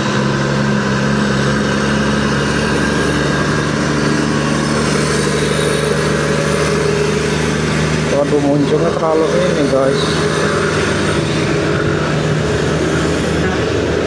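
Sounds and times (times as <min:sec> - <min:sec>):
road and wind noise: 0:00.0 - 0:14.0
traffic engine hum: 0:00.0 - 0:14.0.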